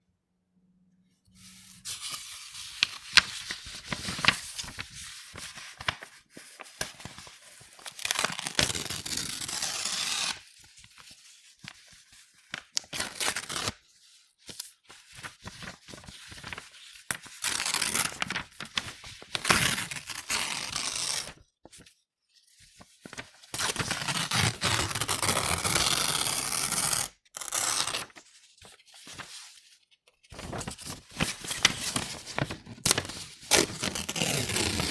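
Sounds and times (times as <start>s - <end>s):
paper tearing: 7.8s - 10.4s, 12.9s - 13.8s, 17.4s - 21.4s, 23.1s - 28.2s, 30.4s - 34.9s.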